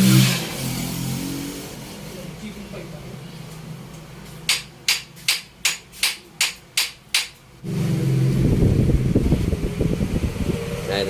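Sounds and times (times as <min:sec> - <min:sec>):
hammer tapping on metal: 0:04.5 - 0:07.4.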